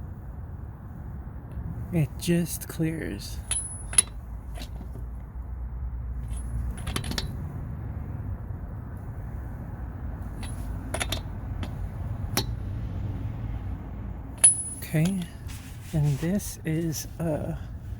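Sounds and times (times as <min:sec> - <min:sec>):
low steady rumble: 0:00.0 - 0:17.9
metallic clinks and taps: 0:03.4 - 0:05.0, 0:10.4 - 0:12.5, 0:14.4 - 0:15.3.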